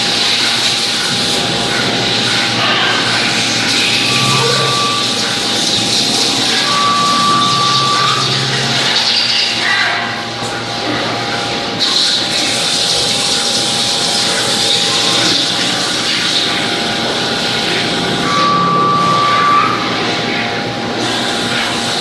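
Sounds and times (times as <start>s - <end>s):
constant machine hum: 0.0s - 22.0s
machine mechanical whir: 0.0s - 22.0s
short high whine: 1.7s - 9.2s.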